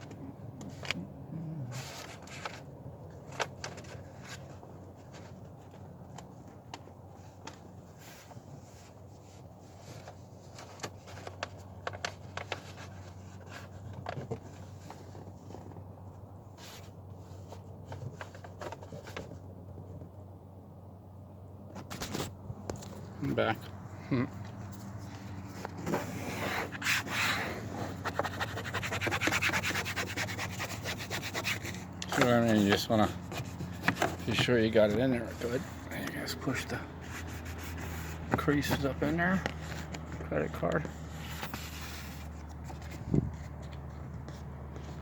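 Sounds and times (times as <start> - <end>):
plastic card scraping vinyl: 0.0 - 9.0, 21.7 - 45.0.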